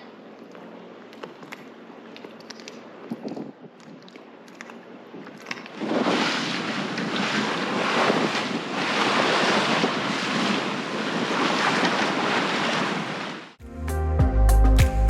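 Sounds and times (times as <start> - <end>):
sea water washing: 0.0 - 13.6
wind rushing on microphone: 3.0 - 4.2, 5.1 - 13.3.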